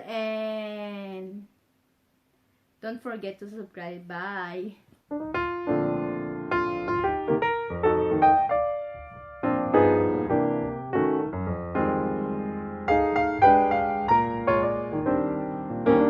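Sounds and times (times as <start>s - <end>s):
piano melody: 5.1s - 16.0s.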